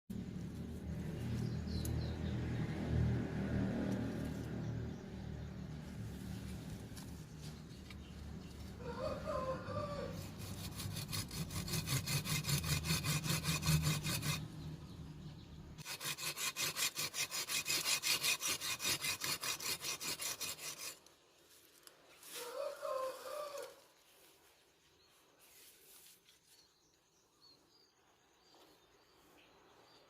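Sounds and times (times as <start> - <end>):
saw cutting wood: 8.9 - 14.7, 15.8 - 21.1.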